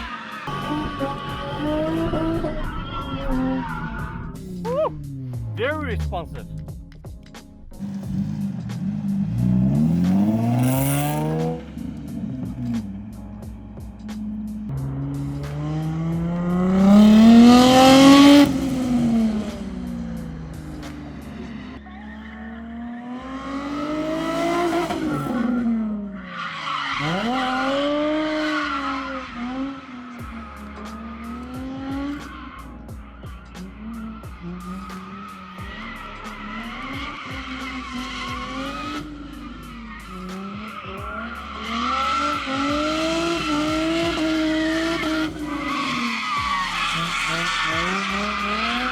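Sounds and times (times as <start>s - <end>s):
tyres squealing: 0.0s - 6.6s, 33.8s - 48.9s
car engine revving: 0.0s - 48.9s.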